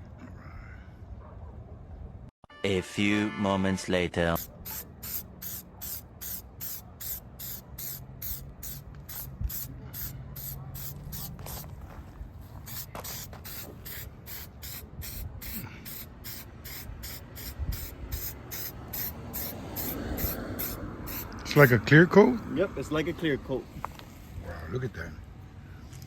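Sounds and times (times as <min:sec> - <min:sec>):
aerosol spray hissing in bursts: 0:04.4 - 0:11.7, 0:12.6 - 0:21.7.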